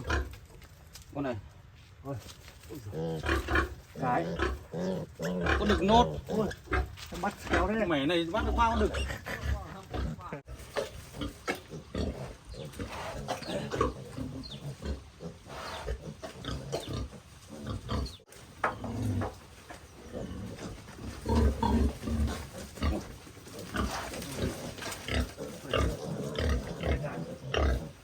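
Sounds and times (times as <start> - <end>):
piglets grunting and squealing: 0.0 - 0.4, 2.6 - 28.0.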